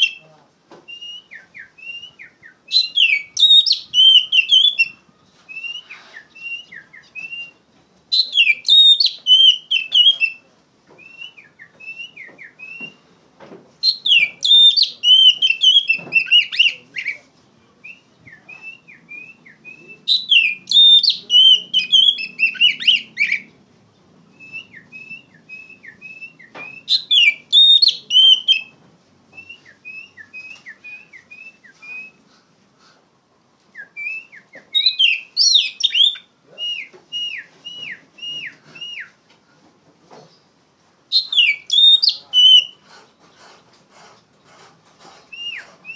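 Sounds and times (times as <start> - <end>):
songbird singing: 0.0 - 32.3, 33.6 - 39.2, 40.1 - 43.5, 44.4 - 45.9
rising whistled bird notes: 0.9 - 10.4, 11.0 - 13.1, 13.8 - 23.5, 24.3 - 28.7, 29.4 - 32.2, 33.8 - 39.2, 41.1 - 42.8.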